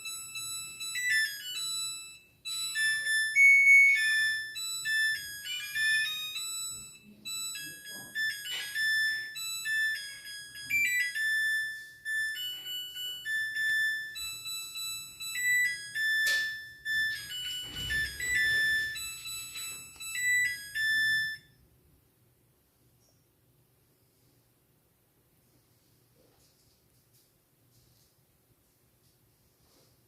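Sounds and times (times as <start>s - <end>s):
washing machine buzzer melody: 0.0s - 21.6s.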